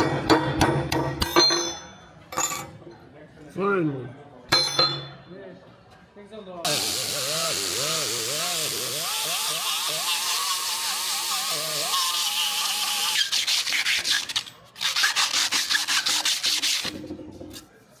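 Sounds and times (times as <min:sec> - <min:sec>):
grinding wheel on metal: 0:06.7 - 0:15.1
sandpaper rubbing strokes: 0:11.5 - 0:17.0.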